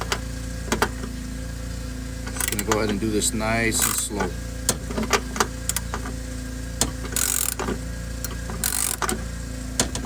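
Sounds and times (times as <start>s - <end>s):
steady low hum: 0.0s - 10.0s
ratchet rasping: 2.2s - 3.0s, 3.7s - 6.1s, 6.8s - 10.0s
clicks and creaks of wrench and bolt: 2.3s - 3.0s, 3.8s - 6.2s, 6.8s - 10.0s.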